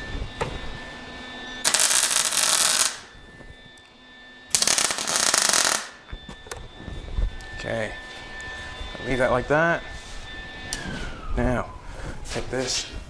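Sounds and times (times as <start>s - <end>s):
arc welder crackling: 1.6s - 3.1s, 4.5s - 6.0s.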